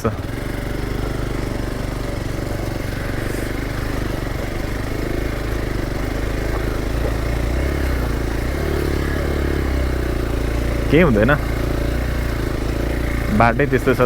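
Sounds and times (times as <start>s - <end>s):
motorcycle engine running: 0.0s - 14.0s.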